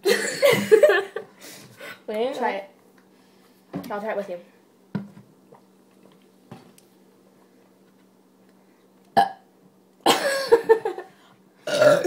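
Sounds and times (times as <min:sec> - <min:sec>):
person burping: 0:09.2 - 0:09.4, 0:11.6 - 0:12.0.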